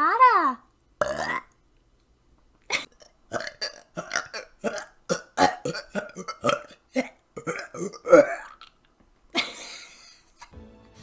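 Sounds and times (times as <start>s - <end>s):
woman burping: 1.0s - 1.6s, 2.7s - 8.7s.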